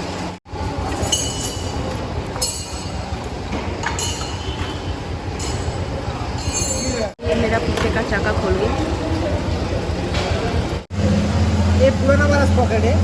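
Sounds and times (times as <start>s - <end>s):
low workshop hum: 0.0s - 13.0s
metal tools clinking: 0.8s - 7.2s.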